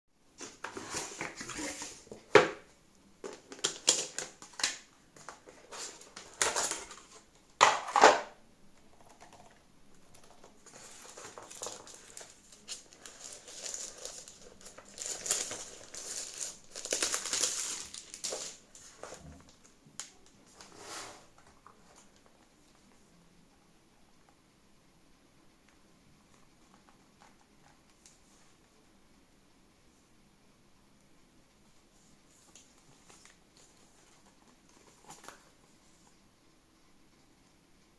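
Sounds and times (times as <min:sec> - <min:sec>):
packaging crinkling and rustling: 0:03.2 - 0:08.2, 0:10.2 - 0:22.4, 0:32.3 - 0:35.7.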